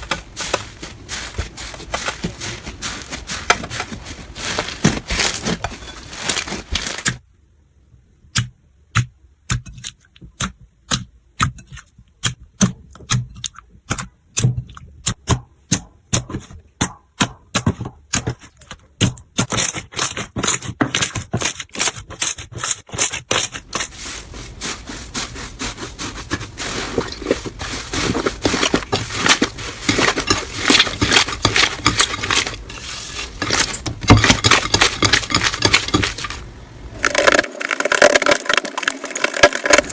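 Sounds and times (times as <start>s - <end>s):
slime squishing with clicks and pops: 8.4s - 16.2s.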